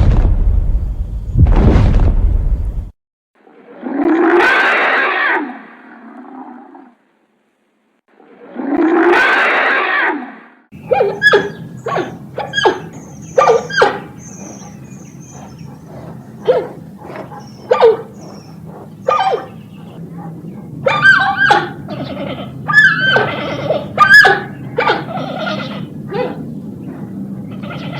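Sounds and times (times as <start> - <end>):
animal yipping: 10.8 - 26.5
steady low hum: 10.8 - 27.7.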